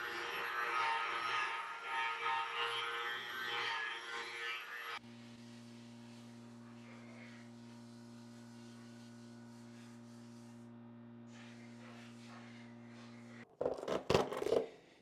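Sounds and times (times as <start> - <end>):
low electrical hum: 5.0 - 13.4.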